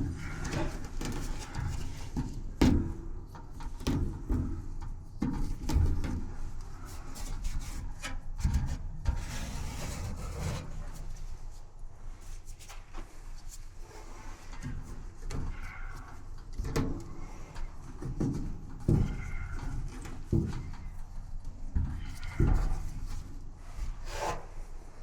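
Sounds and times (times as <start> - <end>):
rubbing and scraping: 6.8 - 16.4, 17.1 - 25.0.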